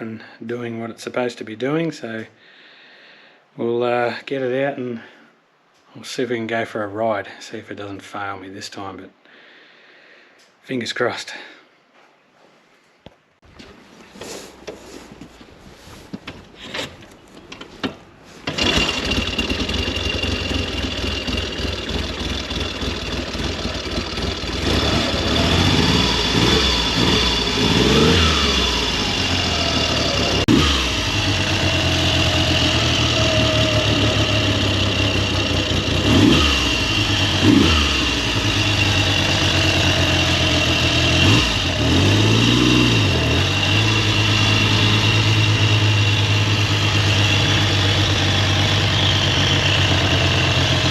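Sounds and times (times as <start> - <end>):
motorcycle engine starting and idling: 16.2 - 50.9
engine throttle blips: 18.4 - 50.9.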